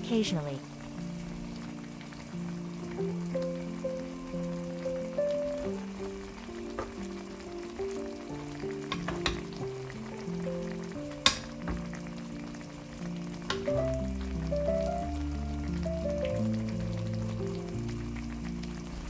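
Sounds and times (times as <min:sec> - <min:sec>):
meat sizzling in a pan: 0:00.0 - 0:19.0
soft background music: 0:00.0 - 0:19.0
utensil clicking against pan: 0:08.8 - 0:09.6, 0:11.2 - 0:12.0, 0:13.4 - 0:13.8.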